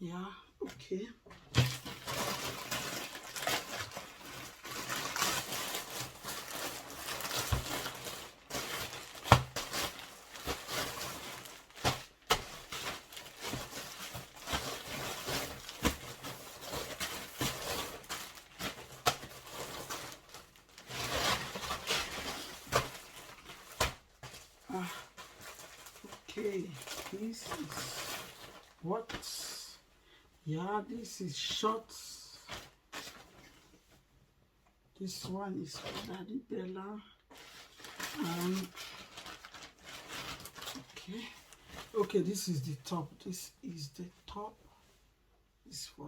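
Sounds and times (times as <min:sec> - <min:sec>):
packaging rustling and crinkling: 0:01.3 - 0:29.4, 0:32.4 - 0:33.7, 0:35.2 - 0:36.2, 0:37.3 - 0:42.4.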